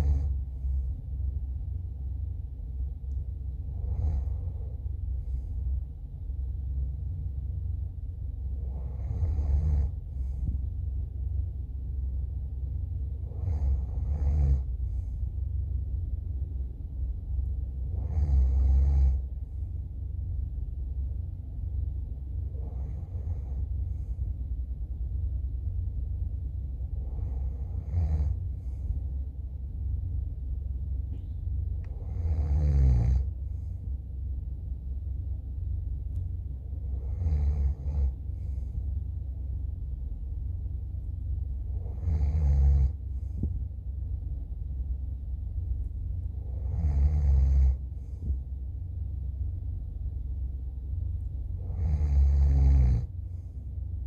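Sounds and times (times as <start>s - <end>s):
steady low rumble: 0.0s - 54.0s
person snoring: 46.4s - 47.8s.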